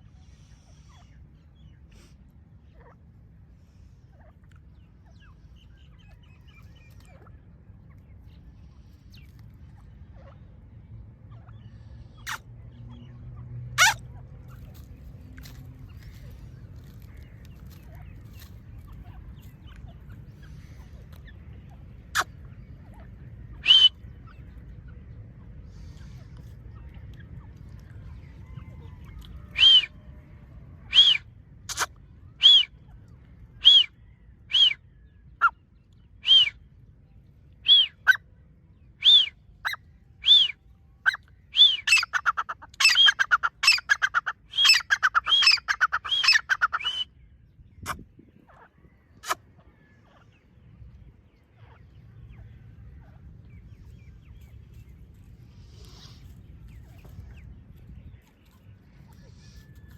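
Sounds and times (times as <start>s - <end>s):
francolin calling: 23.6s - 24.0s, 39.0s - 47.2s.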